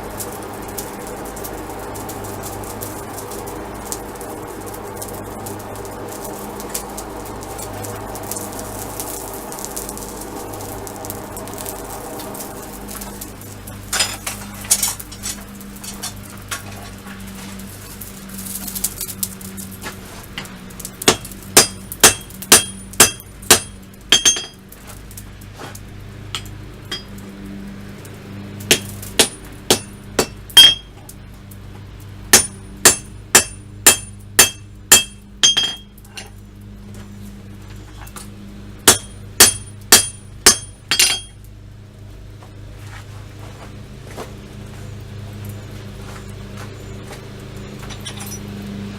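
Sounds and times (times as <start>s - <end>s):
low hum: 0.0s - 48.9s
hammer striking steel on anvil: 20.4s - 24.6s, 26.3s - 27.2s, 28.7s - 31.0s, 32.3s - 36.3s, 38.8s - 41.4s.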